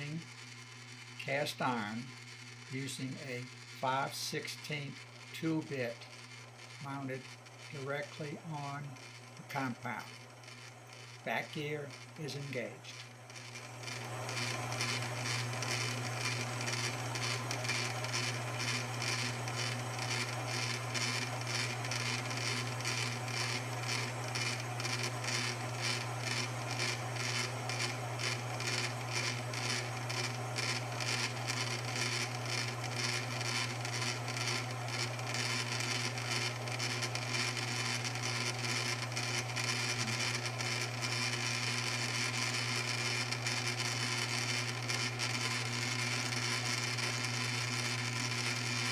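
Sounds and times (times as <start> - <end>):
lathe motor hum: 0.0 - 48.9.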